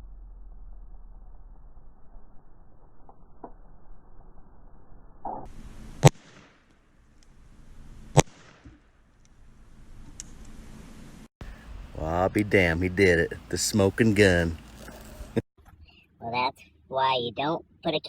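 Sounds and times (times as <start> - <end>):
revolver gunshots: 8.1 - 8.7.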